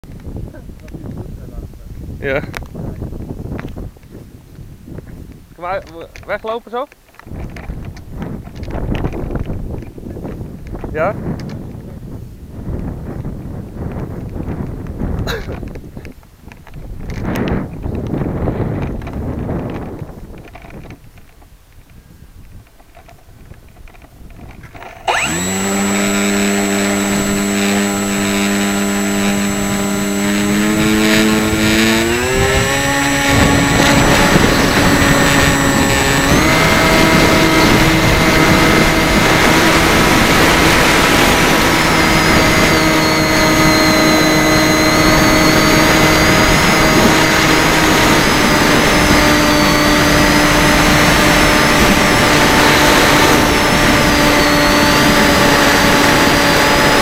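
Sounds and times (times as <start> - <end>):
rushing propeller noise: 23.8 - 57.0
drone motors whining: 24.6 - 57.0.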